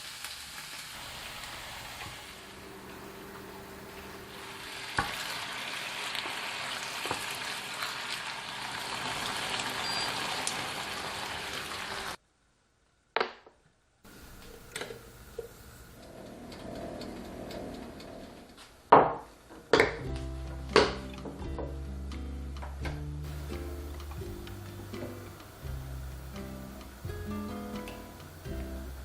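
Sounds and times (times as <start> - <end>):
quiet hiss: 0.0 - 7.5, 12.0 - 29.0
food sizzling in a pan: 0.0 - 12.2, 14.1 - 16.0, 23.2 - 29.0.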